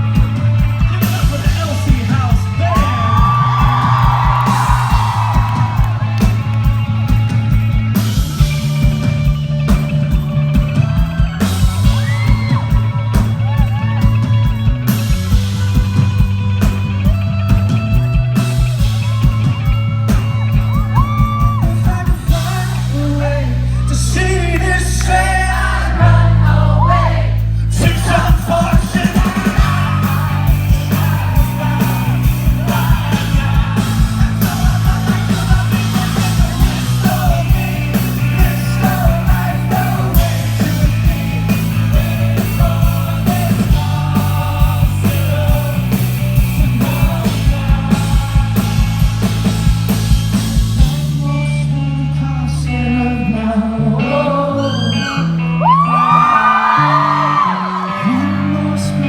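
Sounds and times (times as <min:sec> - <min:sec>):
man singing: 0:00.0 - 0:04.8, 0:21.0 - 0:49.4, 0:50.8 - 0:59.0
steady drum beat: 0:00.0 - 0:23.2, 0:27.4 - 0:51.2
live rock band: 0:00.0 - 0:59.0.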